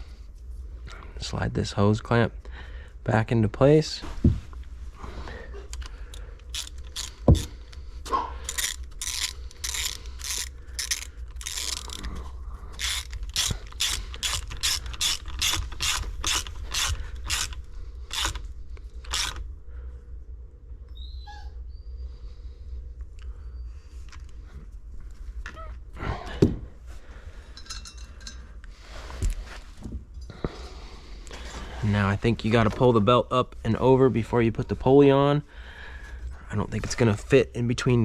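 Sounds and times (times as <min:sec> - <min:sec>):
hand ratchet clicking: 0:05.7 - 0:07.8, 0:08.4 - 0:12.2, 0:12.8 - 0:19.4.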